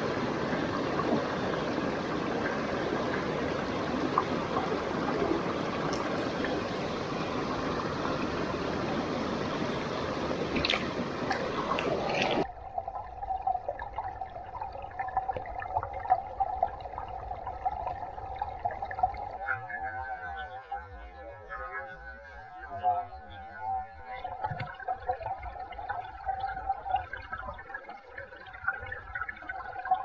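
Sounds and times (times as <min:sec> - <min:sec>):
stream water rushing: 0:00.0 - 0:12.5
steady hum: 0:00.0 - 0:13.1.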